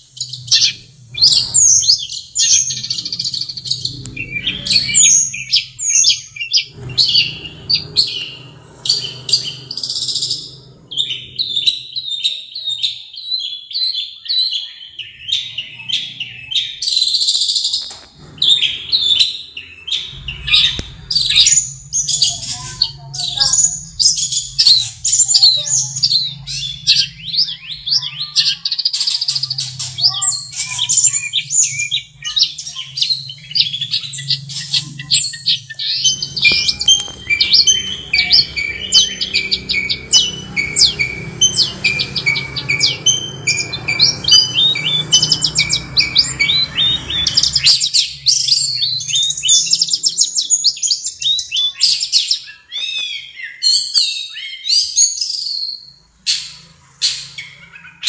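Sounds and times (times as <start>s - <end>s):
bird chirps and whistles: 30.1s - 48.1s
low steady hum: 31.3s - 47.7s.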